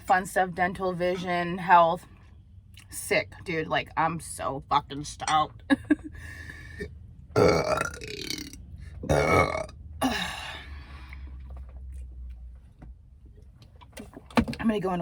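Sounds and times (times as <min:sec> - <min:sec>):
woman belching loudly: 0:07.4 - 0:10.5.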